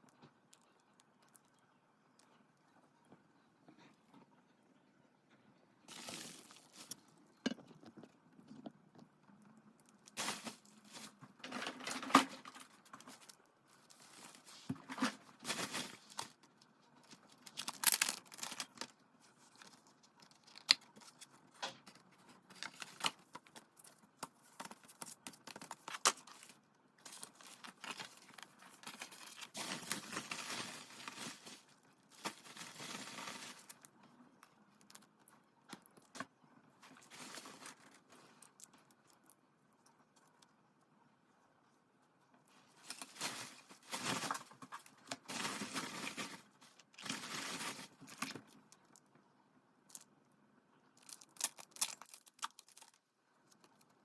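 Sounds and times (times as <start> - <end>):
plastic wrap and paper tearing: 5.9 - 7.1, 10.1 - 16.4, 17.1 - 21.2, 24.5 - 33.8, 42.8 - 48.4.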